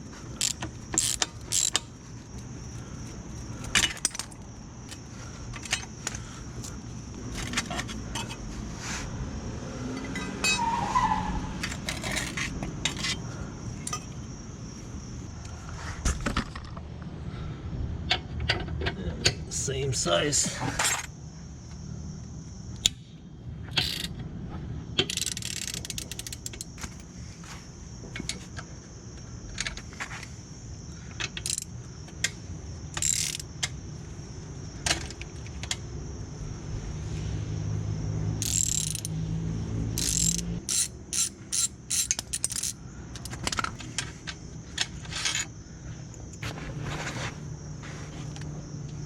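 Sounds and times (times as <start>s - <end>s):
ratchet wrench clicking: 0.4s - 1.9s, 25.0s - 26.7s, 31.4s - 31.7s, 33.0s - 33.5s, 38.4s - 39.2s, 40.0s - 43.4s.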